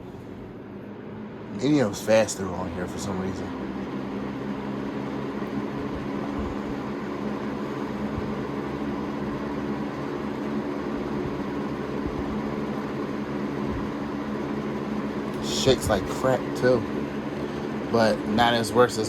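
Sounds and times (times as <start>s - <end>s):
box fan running: 0.0s - 19.0s.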